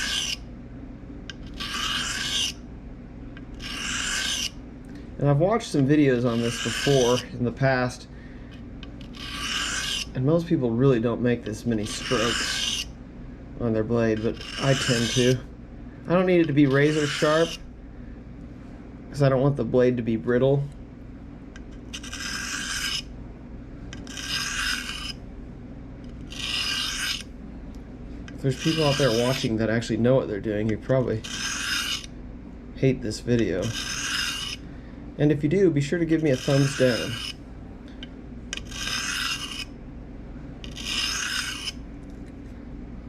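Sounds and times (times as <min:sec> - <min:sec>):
knife blade on sharpening stone: 0:00.0 - 0:00.4, 0:01.5 - 0:02.6, 0:03.6 - 0:04.5, 0:06.2 - 0:07.2, 0:09.2 - 0:10.1, 0:11.9 - 0:12.9, 0:14.2 - 0:15.4, 0:16.4 - 0:17.6, 0:21.9 - 0:23.1, 0:24.0 - 0:25.2, 0:26.3 - 0:27.2, 0:31.2 - 0:32.1, 0:33.6 - 0:34.6, 0:36.4 - 0:37.4, 0:38.6 - 0:39.7, 0:40.6 - 0:41.8.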